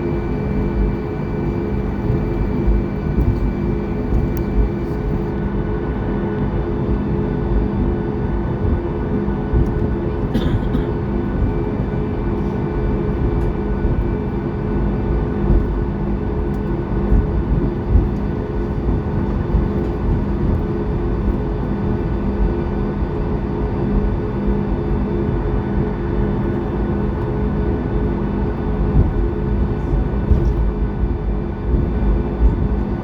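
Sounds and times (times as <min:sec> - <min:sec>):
low rumble: 0:00.0 - 0:05.3
jet engines idling hum: 0:00.0 - 0:33.0.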